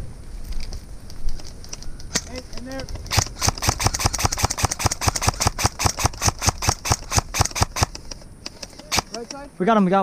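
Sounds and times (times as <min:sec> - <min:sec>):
airsoft gun rapid firing: 0:03.0 - 0:08.0, 0:08.9 - 0:09.2.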